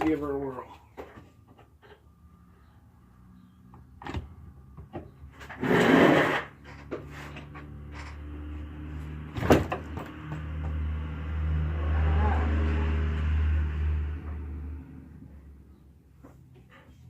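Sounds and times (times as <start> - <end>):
loud rasping noise: 5.5 - 6.6.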